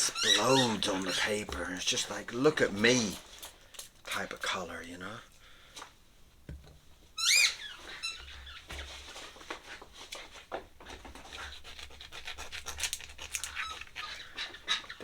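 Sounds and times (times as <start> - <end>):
squeaky toy squeaking: 0.0 - 1.4, 7.2 - 8.6
scratching and rubbing: 0.0 - 2.0, 7.2 - 15.0.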